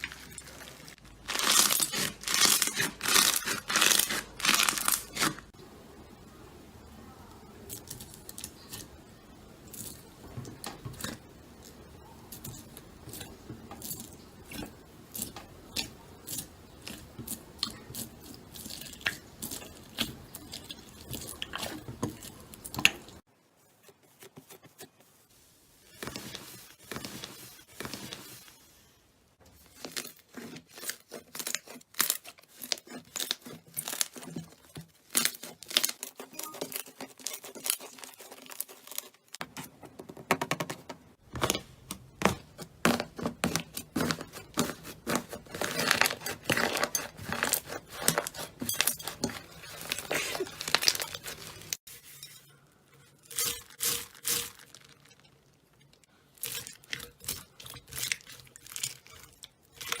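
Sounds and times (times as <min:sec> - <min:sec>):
slime crackling and popping: 0:00.0 - 0:05.5, 0:29.5 - 0:39.4.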